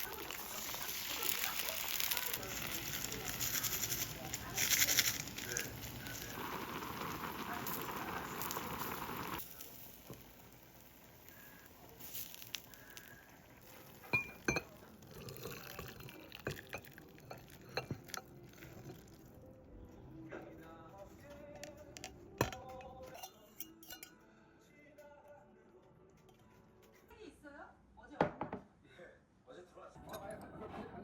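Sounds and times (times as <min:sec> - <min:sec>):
utensils and cookware clicking: 0:00.0 - 0:19.1, 0:21.5 - 0:24.2
steady cooking hiss: 0:00.0 - 0:19.4.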